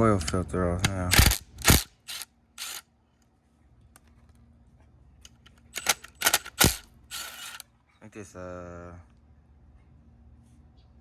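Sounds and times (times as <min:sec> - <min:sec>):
metallic hand tool clicks: 0:05.8 - 0:07.6.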